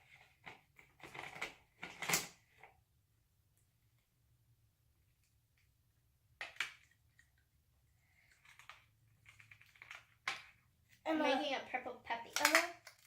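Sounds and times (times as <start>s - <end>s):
faint handling sounds: 6.8s - 13.0s.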